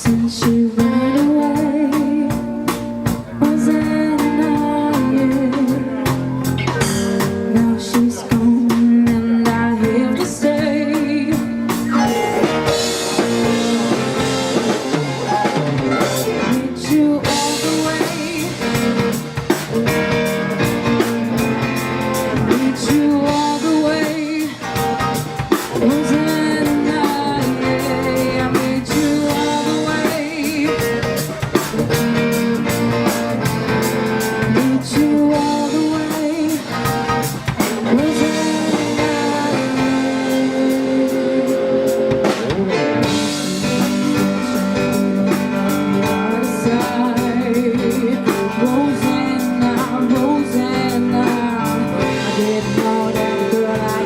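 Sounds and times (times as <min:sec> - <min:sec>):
live rock band: 0:00.0 - 0:54.0
person singing: 0:00.0 - 0:54.0
drum hits: 0:11.4 - 0:35.1.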